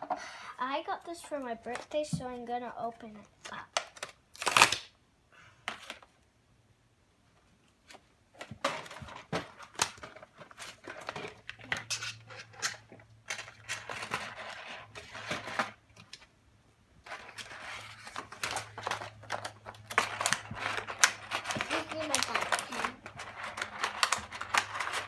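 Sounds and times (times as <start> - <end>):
plastic and paper crinkling: 7.9 - 16.3, 17.0 - 25.0.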